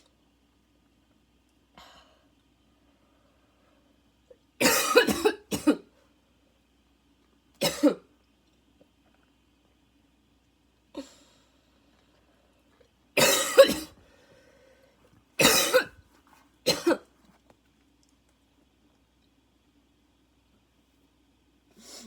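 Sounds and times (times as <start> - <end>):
woman coughing: 4.6 - 5.9, 7.6 - 8.0, 13.2 - 14.0, 15.4 - 16.0, 16.7 - 17.1.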